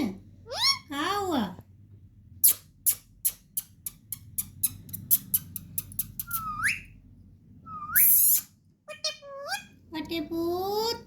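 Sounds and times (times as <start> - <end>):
parrot clicking: 3.3 - 6.8
parrot rising whistle: 6.3 - 6.9, 7.7 - 8.5.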